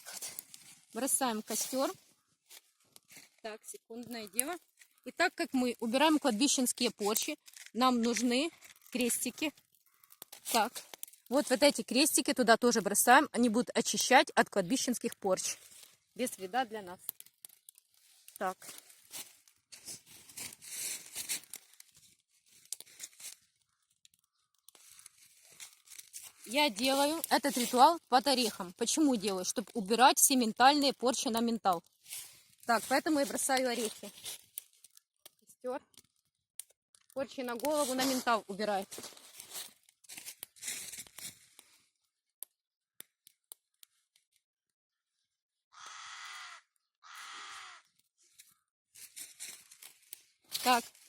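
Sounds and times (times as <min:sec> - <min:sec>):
crinkling and tearing: 0:00.0 - 0:11.6, 0:15.5 - 0:29.7, 0:31.7 - 0:42.1, 0:48.2 - 0:51.0
bonfire crackling and popping: 0:00.0 - 0:44.5, 0:47.8 - 0:51.0.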